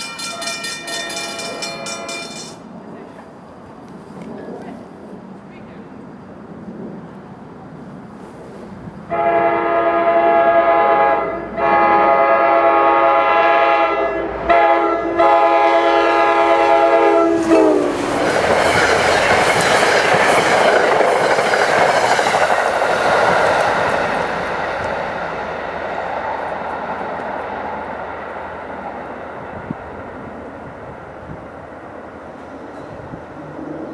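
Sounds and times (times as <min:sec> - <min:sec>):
train rushing and rail clatter: 0:00.0 - 0:33.9
locomotive air horn: 0:09.1 - 0:18.0.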